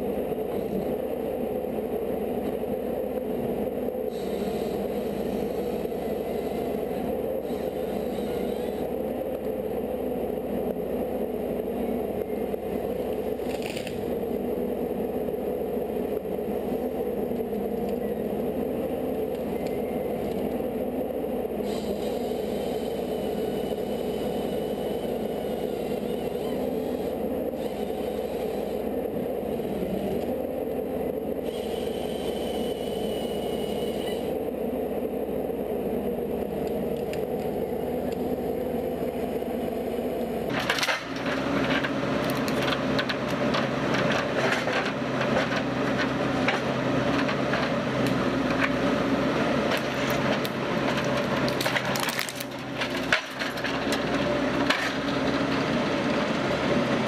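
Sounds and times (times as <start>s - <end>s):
machine humming: 0.0s - 9.6s, 10.2s - 57.0s
wood-processing machine running: 0.0s - 57.0s
wood cracking and splintering: 40.5s - 48.8s, 49.6s - 55.2s.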